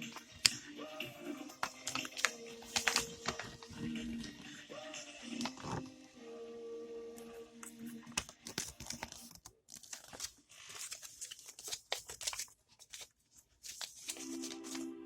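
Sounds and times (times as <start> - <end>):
plastic packaging tearing and crumpling: 1.7 - 3.7, 8.2 - 14.8.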